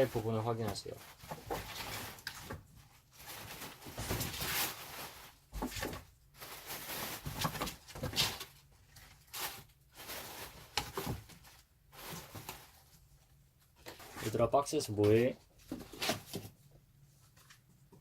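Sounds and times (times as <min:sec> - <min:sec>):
cardboard box rustling and bumping: 0:03.3 - 0:04.8.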